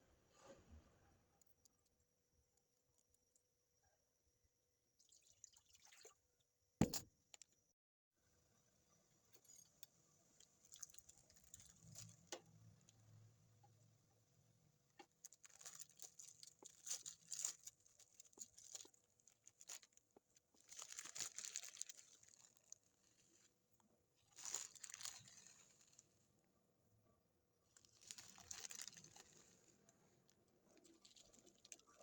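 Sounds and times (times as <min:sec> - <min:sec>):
rustling and crinkling: 0:15.0 - 0:26.2, 0:27.7 - 0:32.0.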